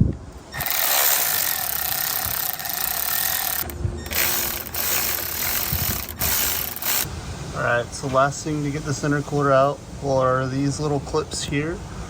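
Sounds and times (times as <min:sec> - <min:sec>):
ratchet wrench ratcheting: 0:00.6 - 0:07.1.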